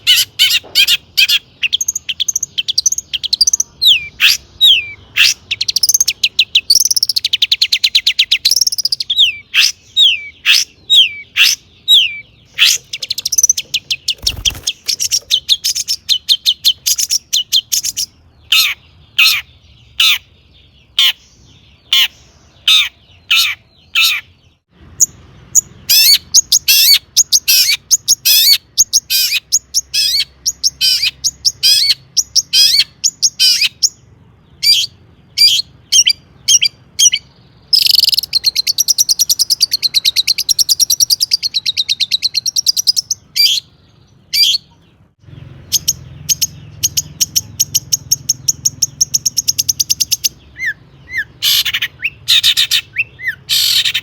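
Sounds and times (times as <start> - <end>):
bird chattering song: 0.0 - 54.0
bird trill: 0.0 - 54.0
bird whistles: 45.7 - 54.0.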